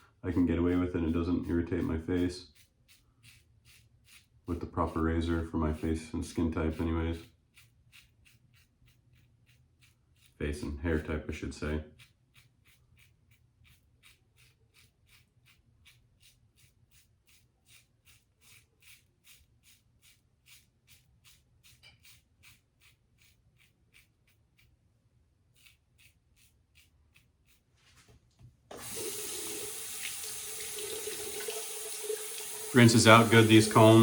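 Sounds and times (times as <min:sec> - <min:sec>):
razor scraping across stubble: 0:00.0 - 0:24.8, 0:25.4 - 0:28.1, 0:28.8 - 0:34.0
tap water running: 0:28.7 - 0:34.0.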